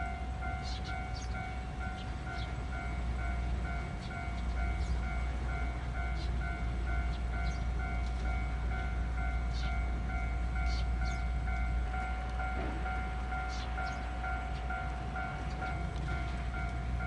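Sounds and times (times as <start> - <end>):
level-crossing warning bell dinging: 0.0 - 17.0
train rumbling past: 0.0 - 17.0.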